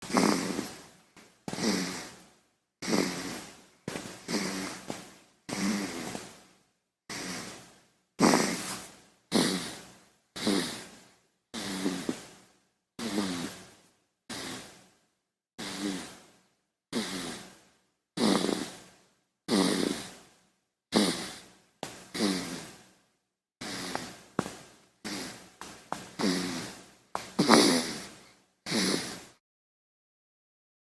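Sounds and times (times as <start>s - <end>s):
baby snoring: 0.0s - 2.2s, 2.8s - 6.4s, 7.1s - 12.4s, 13.0s - 13.7s, 14.3s - 14.8s, 15.6s - 16.3s, 16.9s - 17.6s, 18.2s - 18.9s, 19.5s - 20.3s, 20.9s - 22.8s, 23.6s - 29.4s.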